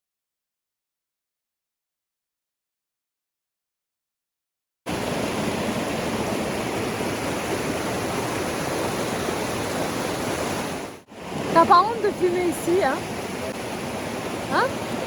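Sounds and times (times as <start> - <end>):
river water rushing: 4.9 - 15.0.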